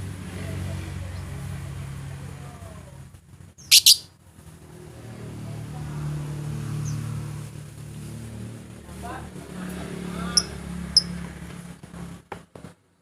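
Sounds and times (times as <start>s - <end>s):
lovebird chirps: 3.6s - 4.1s.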